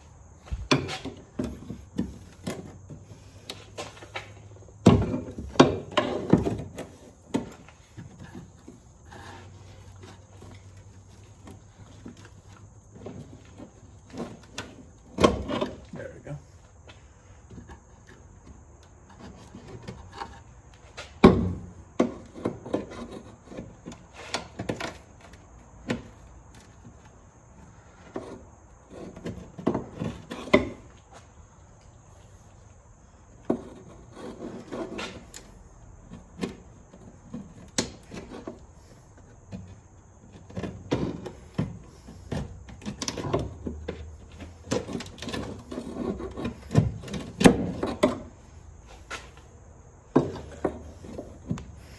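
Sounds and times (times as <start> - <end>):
hand tools knocking and scraping: 0.4 - 31.3, 33.3 - 51.9.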